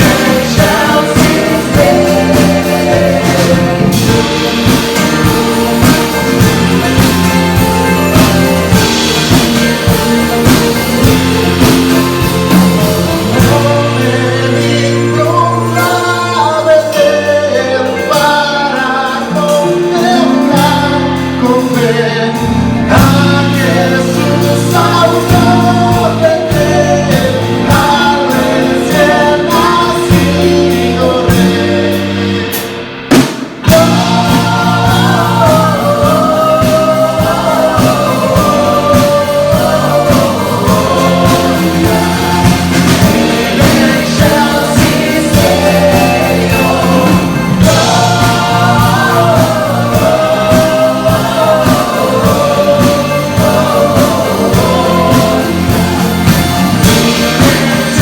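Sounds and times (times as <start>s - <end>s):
voices singing a carol: 0.0s - 32.8s, 33.6s - 58.0s
church band playing: 0.0s - 58.0s.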